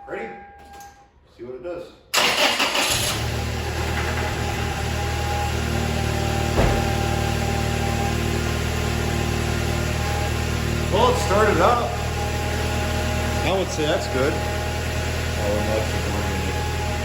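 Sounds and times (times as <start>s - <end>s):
engine starting and idling: 2.1s - 12.2s.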